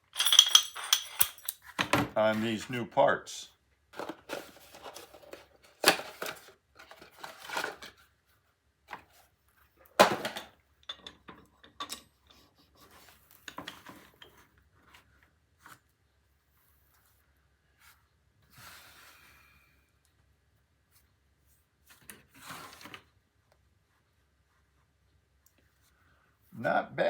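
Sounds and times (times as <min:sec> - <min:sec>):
metal parts clanking on workbench: 0:00.0 - 0:02.2.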